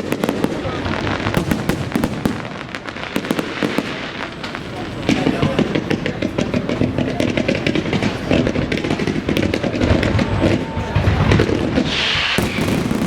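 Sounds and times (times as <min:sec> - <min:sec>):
fireworks bangs and crackles: 0:00.0 - 0:13.0
firework hissing burst: 0:07.8 - 0:13.0.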